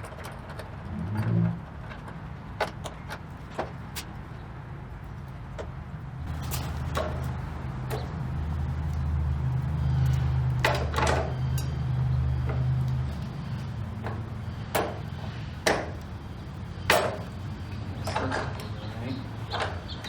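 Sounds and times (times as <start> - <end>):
low hum: 6.2 - 20.0.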